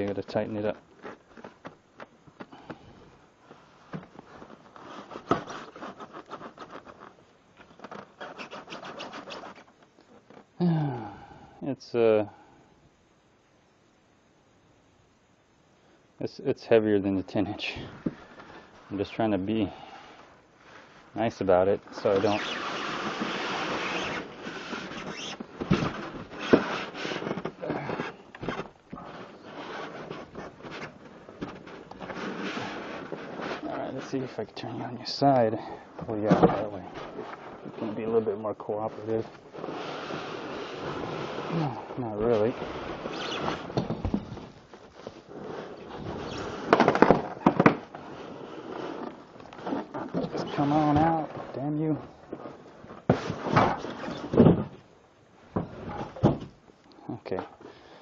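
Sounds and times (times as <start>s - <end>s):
box packaging scraping and rustling: 3.5s - 9.8s, 20.6s - 54.5s.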